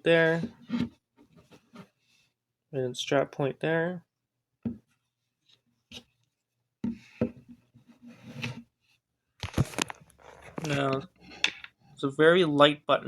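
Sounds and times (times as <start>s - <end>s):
rubbing against camera body: 9.5s - 11.4s.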